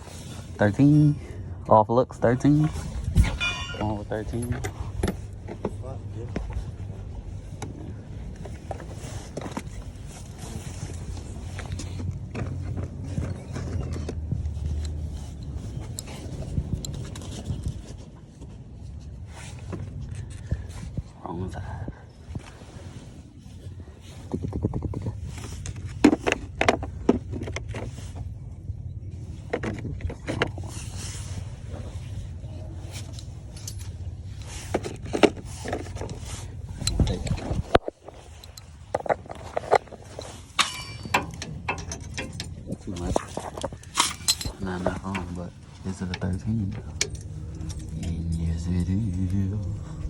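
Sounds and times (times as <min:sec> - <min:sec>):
steady low hum: 0:00.0 - 0:13.6, 0:14.3 - 0:50.0
metal tools clinking and scraping: 0:02.2 - 0:05.4, 0:29.7 - 0:48.5
steady low rumble: 0:14.2 - 0:50.0.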